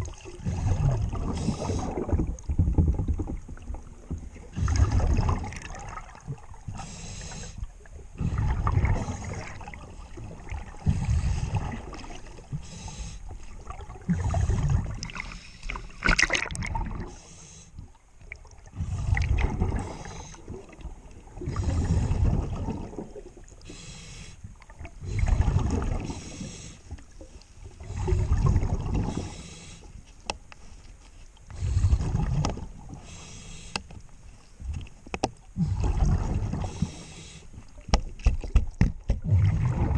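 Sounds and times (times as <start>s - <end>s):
regulator exhaled bubbles gurgling: 0.0s - 12.7s, 13.5s - 17.2s, 18.3s - 23.8s, 24.6s - 29.5s, 31.5s - 33.2s, 35.5s - 37.2s, 39.1s - 39.9s
regulator inhale hiss: 1.4s - 2.0s, 6.8s - 7.7s, 12.5s - 13.3s, 15.2s - 16.0s, 17.1s - 17.9s, 18.8s - 20.5s, 23.6s - 24.5s, 26.0s - 27.0s, 29.1s - 30.0s, 33.0s - 34.0s, 36.6s - 37.6s.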